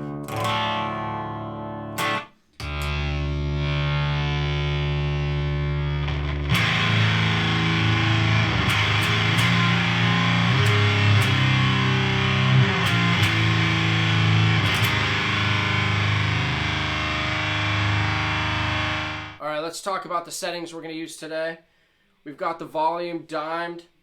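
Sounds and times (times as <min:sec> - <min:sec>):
distorted electric guitar chords: 0:00.0 - 0:19.4.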